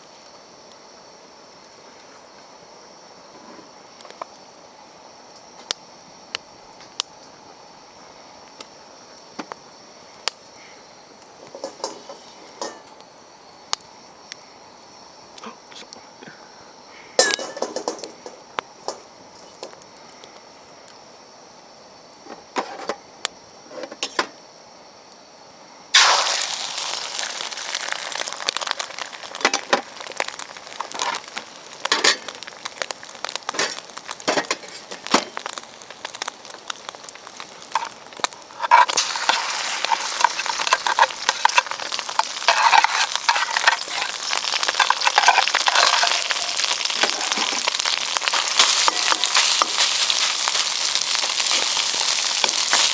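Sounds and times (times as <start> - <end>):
food sizzling in a wok: 0.0 - 15.6, 16.4 - 24.7, 25.9 - 52.9
spatula scraping a wok: 26.0 - 52.9.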